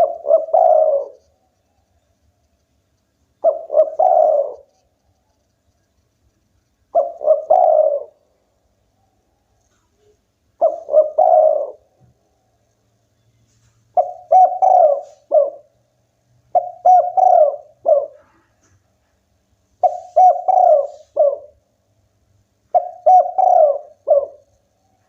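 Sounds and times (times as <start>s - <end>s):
dove cooing: 0.0s - 1.4s, 3.4s - 4.9s, 6.9s - 8.4s, 9.7s - 12.1s, 14.0s - 15.8s, 16.5s - 18.6s, 19.8s - 21.6s, 22.7s - 25.0s.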